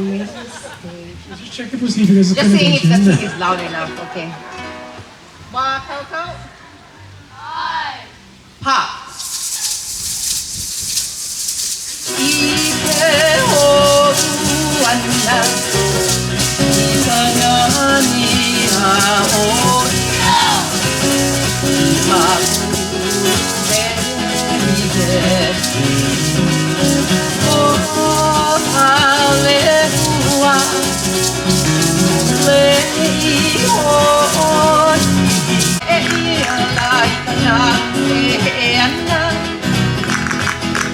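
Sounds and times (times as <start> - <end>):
shaken rattle: 9.1 - 37.0, 40.0 - 40.9
plucked strings melody: 12.5 - 35.8.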